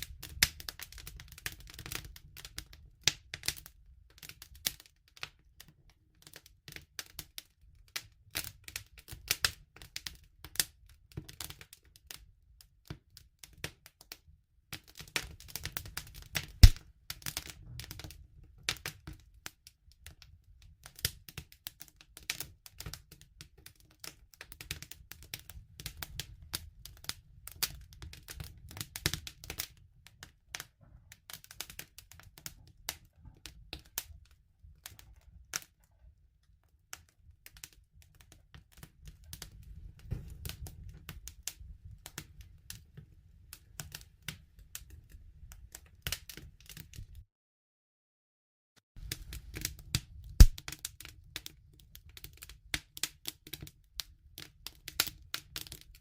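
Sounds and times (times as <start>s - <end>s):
campfire crackling and popping: 0.0s - 5.4s, 6.2s - 14.1s, 14.7s - 35.8s, 36.9s - 47.2s, 49.0s - 56.0s
low rumble of fire: 0.0s - 13.8s, 14.6s - 47.2s, 49.0s - 56.0s.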